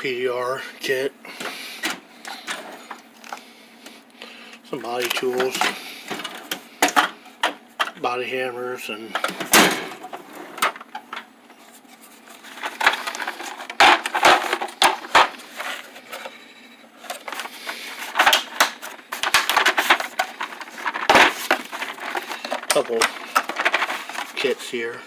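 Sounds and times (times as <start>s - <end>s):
tools clattering and rattling: 5.0s - 8.0s, 12.3s - 16.4s, 17.0s - 24.5s.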